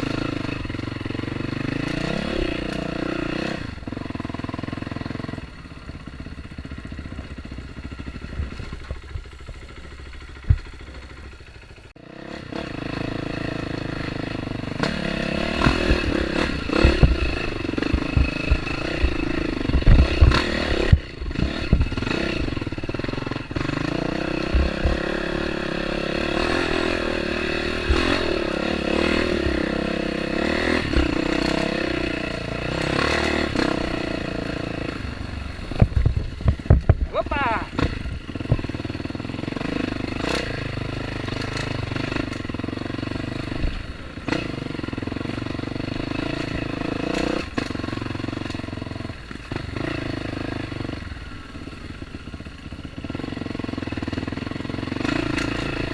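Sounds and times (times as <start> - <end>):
dirt bike engine: 0.0 - 55.9
thumps and clatter over rough ground: 5.8 - 11.9, 14.8 - 31.9, 35.6 - 50.2, 53.4 - 55.9.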